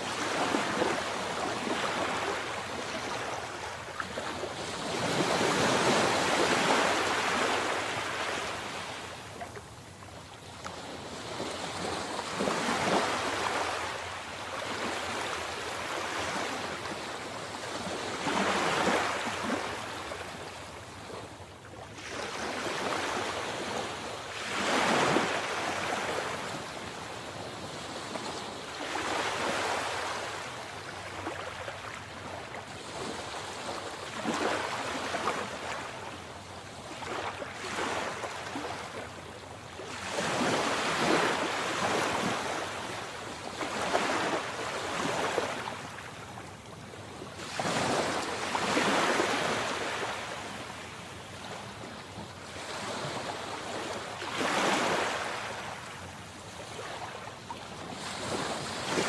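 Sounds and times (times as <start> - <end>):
sea waves breaking: 39.9 - 46.5, 47.4 - 50.8, 52.5 - 55.9.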